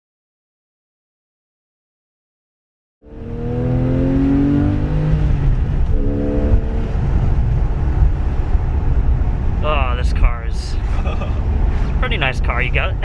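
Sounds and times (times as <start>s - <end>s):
car engine accelerating hard: 3.0s - 10.0s
low road rumble: 3.0s - 13.0s.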